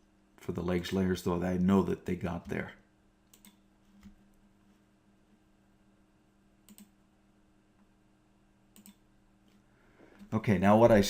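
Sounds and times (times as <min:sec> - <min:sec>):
faint mouse clicks: 0:03.3 - 0:04.2, 0:06.6 - 0:07.0, 0:08.7 - 0:10.3.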